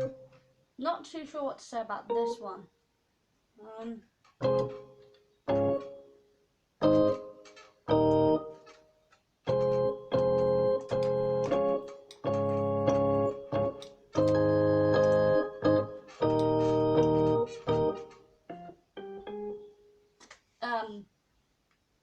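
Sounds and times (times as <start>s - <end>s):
electronic organ chords: 0.0s - 0.3s, 4.4s - 6.0s, 6.8s - 8.7s, 9.4s - 19.8s.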